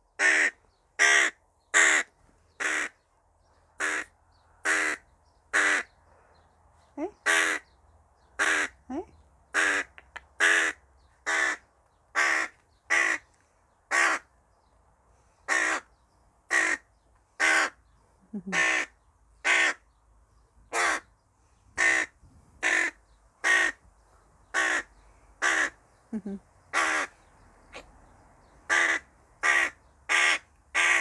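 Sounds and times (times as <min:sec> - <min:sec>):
crow cawing: 0:00.2 - 0:03.0, 0:03.8 - 0:05.9, 0:07.3 - 0:07.6, 0:08.4 - 0:08.8, 0:09.6 - 0:11.6, 0:12.2 - 0:13.2, 0:13.9 - 0:14.3, 0:15.5 - 0:15.9, 0:16.5 - 0:16.8, 0:17.4 - 0:17.8, 0:18.6 - 0:19.8, 0:20.7 - 0:21.0, 0:21.8 - 0:23.8, 0:24.5 - 0:25.8, 0:26.7 - 0:27.1, 0:28.7 - 0:31.0.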